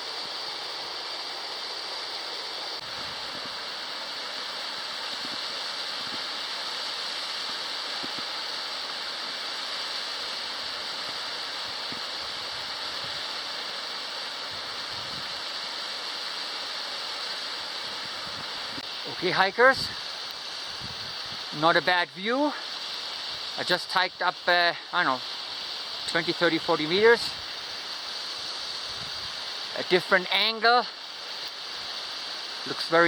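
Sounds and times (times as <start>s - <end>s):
waterfall rushing: 0.0s - 33.0s.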